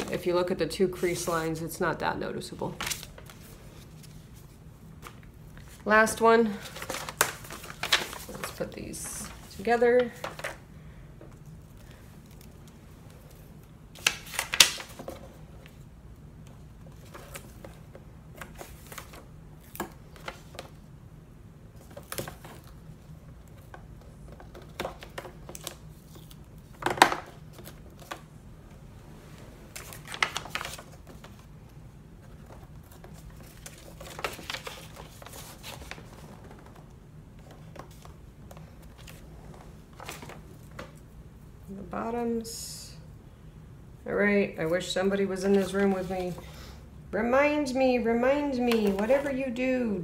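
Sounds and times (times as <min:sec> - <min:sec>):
paper envelopes rustling: 0:02.6 - 0:10.6, 0:11.7 - 0:15.8, 0:16.8 - 0:20.8, 0:21.8 - 0:28.3, 0:29.7 - 0:41.0, 0:45.3 - 0:46.5, 0:48.6 - 0:49.4.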